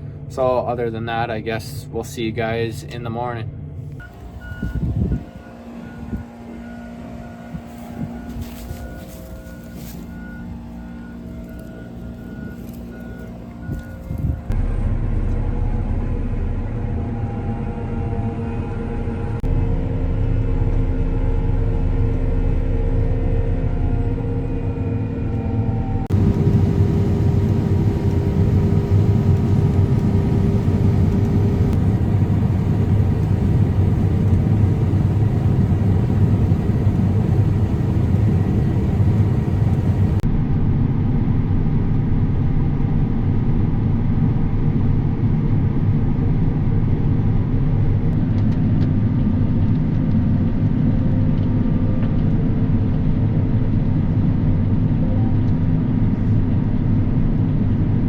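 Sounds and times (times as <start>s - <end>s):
combine harvester machinery drone: 3.8s - 40.2s.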